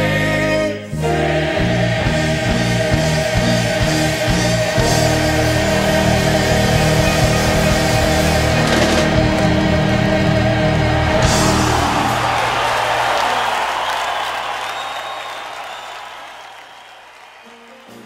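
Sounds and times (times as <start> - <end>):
gospel choir song: 0.0 - 14.2
music with steady bass line: 1.0 - 12.3.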